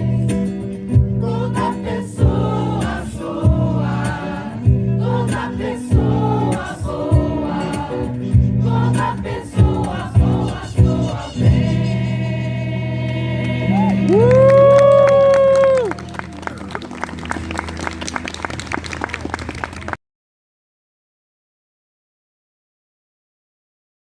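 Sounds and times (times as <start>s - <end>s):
percussion beat: 0.0s - 12.2s
choir singing: 0.0s - 14.4s
acoustic guitar: 0.0s - 18.9s.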